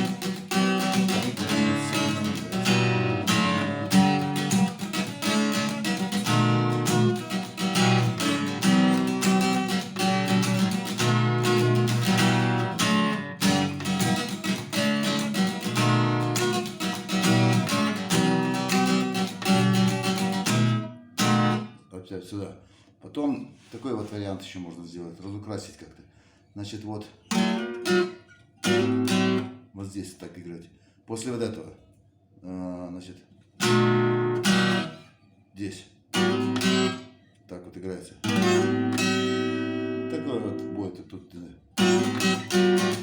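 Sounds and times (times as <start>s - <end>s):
acoustic guitar strumming: 0.0s - 21.8s, 27.3s - 29.6s, 33.6s - 35.1s, 36.1s - 37.2s, 38.2s - 41.0s, 41.8s - 43.0s.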